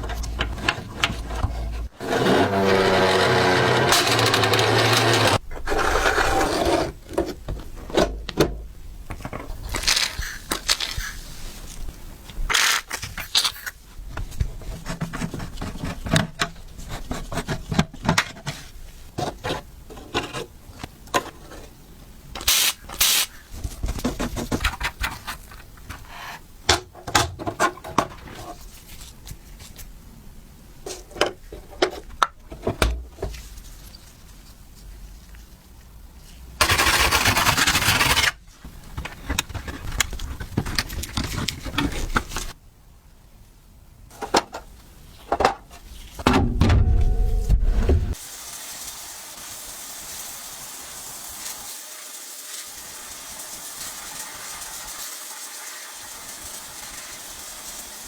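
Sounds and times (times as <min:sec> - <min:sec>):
loud gliding pitched sound: 0:46.5 - 0:48.2.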